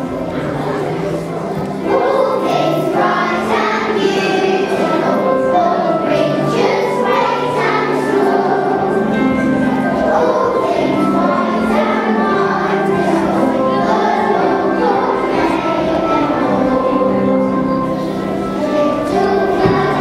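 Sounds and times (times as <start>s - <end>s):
children singing in unison: 0.0s - 20.0s.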